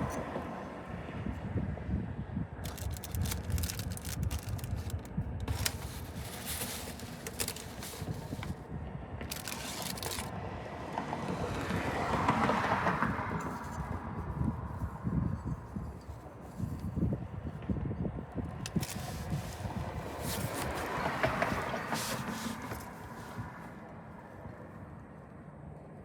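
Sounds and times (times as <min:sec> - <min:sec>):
low wind-like rumble: 0:00.0 - 0:12.3, 0:13.0 - 0:23.8
scraping and crackling handling: 0:02.6 - 0:08.6, 0:09.2 - 0:10.4, 0:18.5 - 0:23.6.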